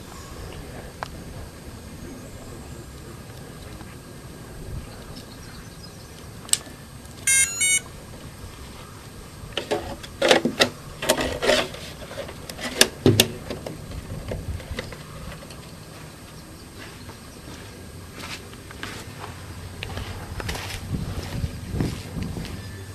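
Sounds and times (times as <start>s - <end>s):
stepped electronic beeps: 7.3s - 7.9s.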